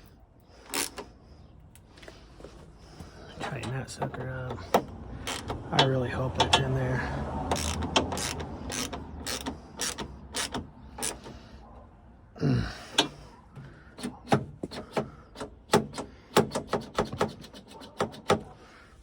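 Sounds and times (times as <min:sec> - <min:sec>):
hand ratchet clicking: 0:00.7 - 0:01.1, 0:04.7 - 0:06.7, 0:07.4 - 0:11.3.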